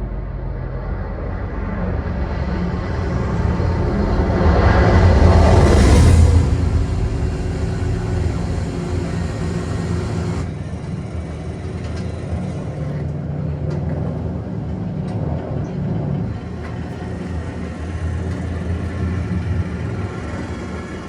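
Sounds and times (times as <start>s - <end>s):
propeller bomber engines droning: 0.0s - 21.0s.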